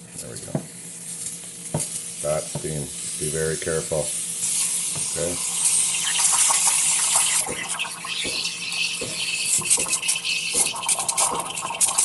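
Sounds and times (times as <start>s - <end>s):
steam wand hissing in milk: 2.1s - 12.0s
milk sputtering pops: 5.9s - 12.0s.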